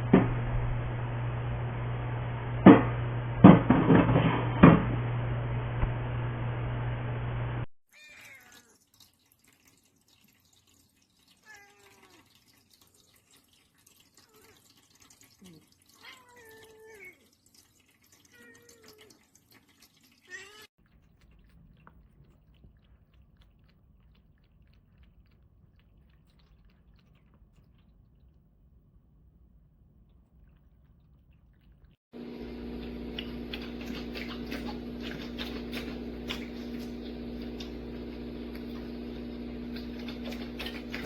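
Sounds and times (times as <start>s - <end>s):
cat meowing: 7.9s - 8.8s
water dripping and trickling: 8.0s - 28.3s, 30.1s - 41.0s.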